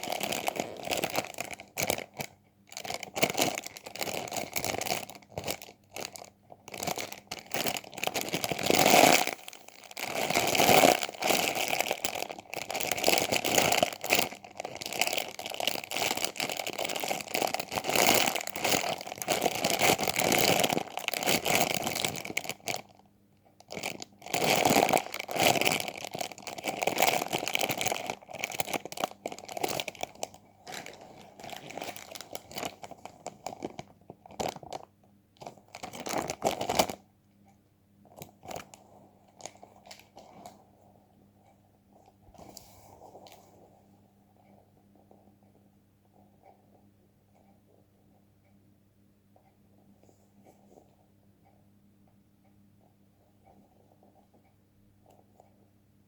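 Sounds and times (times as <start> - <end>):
squishy toy crinkling and crunching: 0.0 - 23.0, 23.6 - 37.0.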